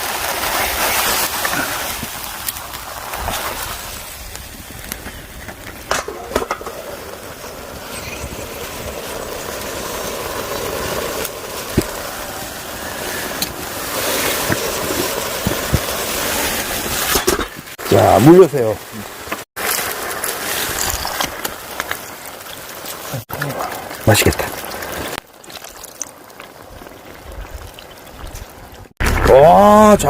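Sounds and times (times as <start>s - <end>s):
stew sizzling in a wok: 6.6s - 17.2s.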